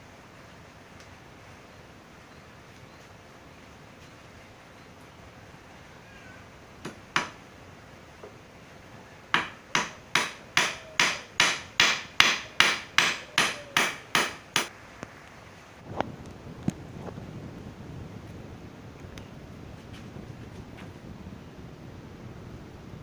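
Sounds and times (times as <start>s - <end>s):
hammer hitting nails into wood: 6.8s - 7.4s, 9.3s - 14.7s.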